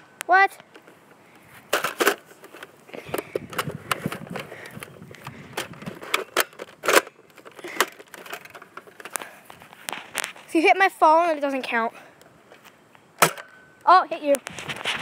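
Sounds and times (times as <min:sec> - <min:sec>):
handling clicks and knocks: 0:00.6 - 0:10.5.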